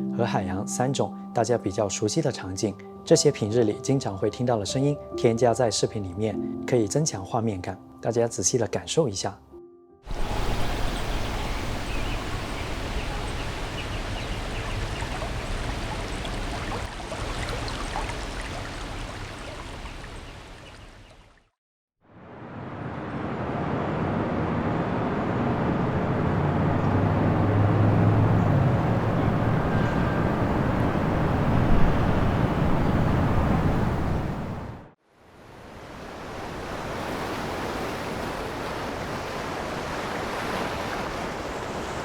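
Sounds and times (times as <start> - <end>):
steady forest rush: 10.1 - 20.5, 22.1 - 42.0
faint bird chirps: 10.2 - 15.3
traffic rumble: 10.2 - 19.1, 22.4 - 34.8.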